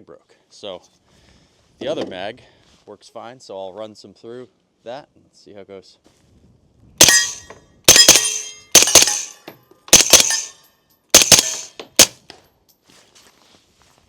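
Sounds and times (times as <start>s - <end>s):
suppressed gunshots: 7.0s - 10.5s, 11.2s - 12.2s
bullets clanging on steel: 7.0s - 12.8s.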